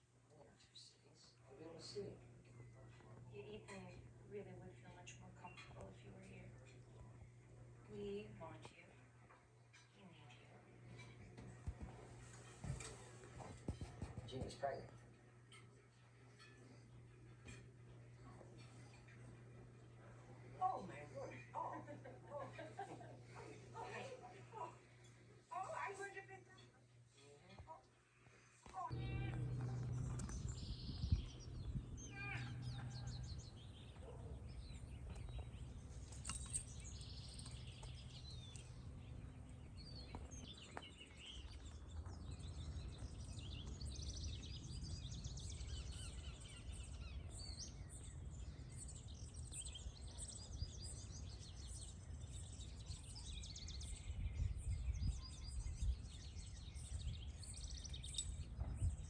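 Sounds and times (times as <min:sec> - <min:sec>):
small birds chirping: 0:00.4 - 0:59.0
steady low rumble: 0:28.9 - 0:49.5.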